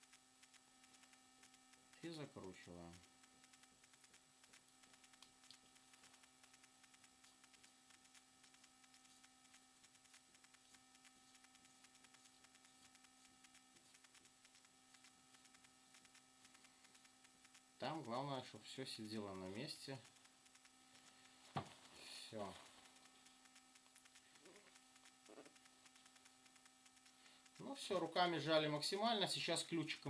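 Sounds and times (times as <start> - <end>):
faint electrical hum: 0.0 - 30.0
faint ticks: 0.0 - 30.0.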